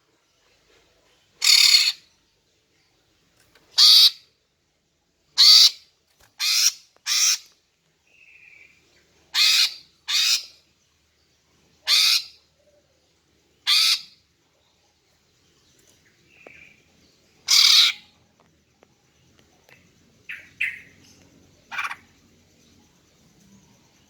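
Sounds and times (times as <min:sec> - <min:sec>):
bird giving harsh rasping calls: 0:01.4 - 0:02.0, 0:03.8 - 0:04.2, 0:05.4 - 0:05.8, 0:06.4 - 0:07.5, 0:09.4 - 0:10.5, 0:11.9 - 0:12.4, 0:13.7 - 0:14.2, 0:17.5 - 0:18.1, 0:21.7 - 0:22.0.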